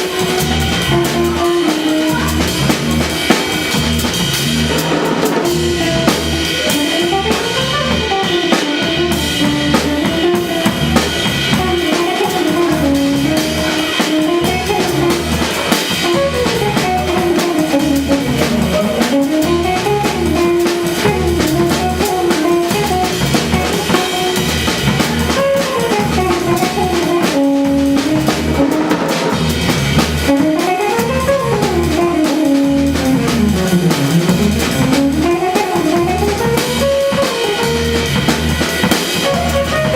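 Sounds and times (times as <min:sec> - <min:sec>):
drum kit steady beat: 0:00.0 - 0:39.9
jazz guitar: 0:00.0 - 0:39.9.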